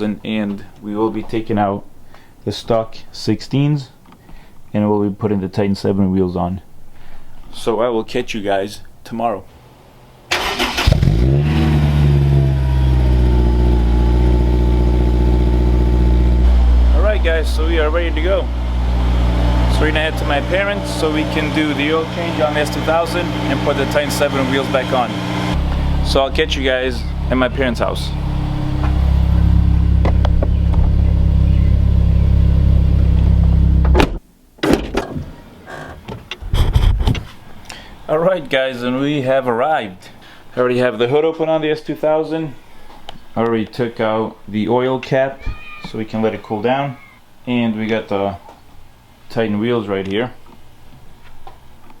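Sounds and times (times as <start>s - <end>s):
car engine starting and idling: 10.3s - 34.2s.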